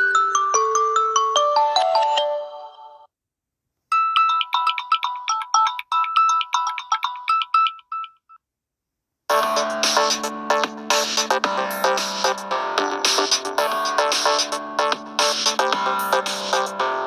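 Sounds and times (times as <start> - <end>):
chiming ringtone melody: 0.0 - 3.1, 3.9 - 8.4
electronic ringtone with bass line: 3.9 - 8.4, 9.3 - 17.0.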